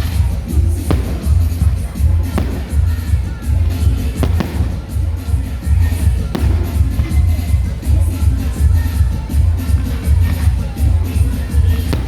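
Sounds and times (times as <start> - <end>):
sharp bang: 0.9 - 7.9.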